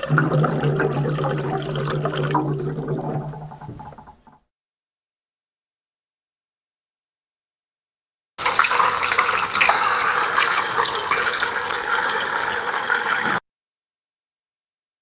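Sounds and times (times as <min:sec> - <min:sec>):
water pouring into cup: 0:00.0 - 0:04.3, 0:08.4 - 0:13.4.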